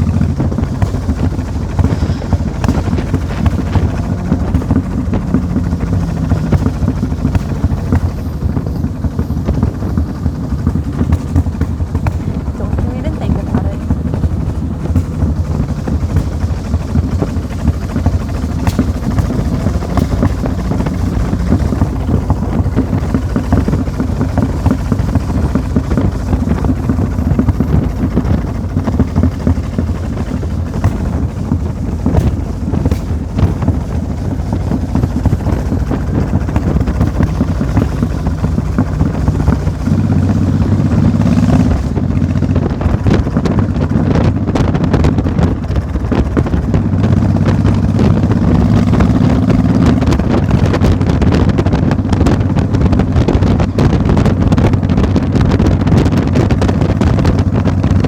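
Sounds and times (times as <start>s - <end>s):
engine running: 0.0s - 58.0s
rough gusty noise: 0.0s - 58.0s.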